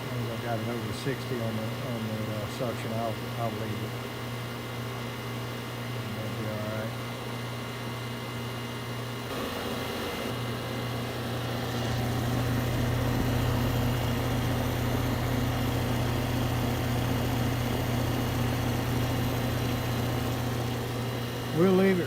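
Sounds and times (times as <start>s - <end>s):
compressor humming: 0.0s - 22.0s
condenser fan whooshing: 0.0s - 22.0s.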